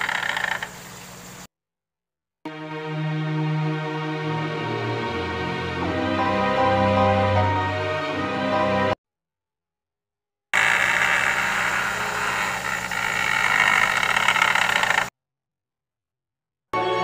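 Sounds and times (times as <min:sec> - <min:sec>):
loud steady hiss: 0:00.0 - 0:01.5.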